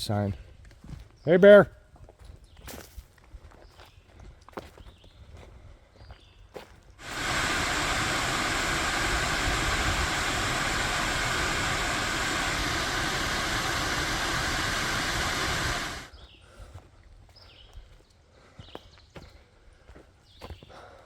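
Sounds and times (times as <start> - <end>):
waterfall rushing: 7.0 - 16.1.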